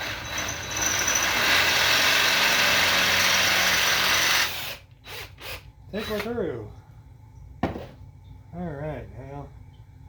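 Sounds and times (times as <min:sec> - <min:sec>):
electric power drill running: 0:00.0 - 0:05.6.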